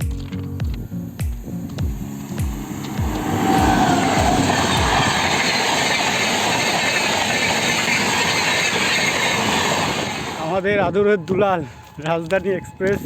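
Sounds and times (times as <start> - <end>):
train wheels rattling on rails: 1.4 - 10.6.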